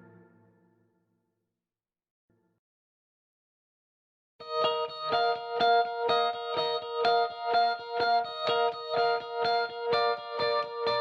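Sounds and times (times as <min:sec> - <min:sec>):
electric guitar with effects: 0:00.0 - 0:00.8, 0:04.4 - 0:11.0.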